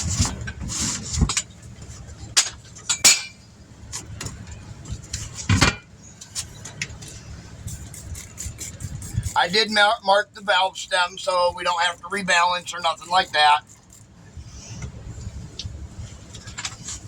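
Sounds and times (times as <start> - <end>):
sharp metal clank: 2.4 - 3.4.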